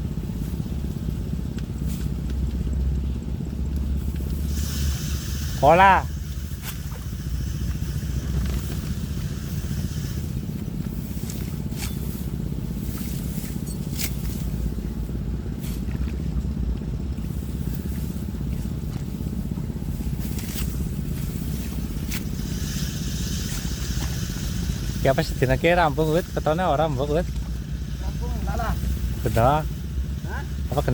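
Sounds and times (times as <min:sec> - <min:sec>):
motor rumbling: 0:00.0 - 0:30.9.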